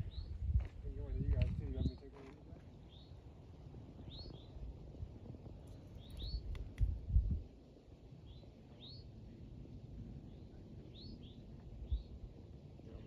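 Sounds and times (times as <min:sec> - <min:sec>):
songbird chirping: 0:00.0 - 0:03.2, 0:04.0 - 0:04.7, 0:05.7 - 0:06.7, 0:10.2 - 0:12.2.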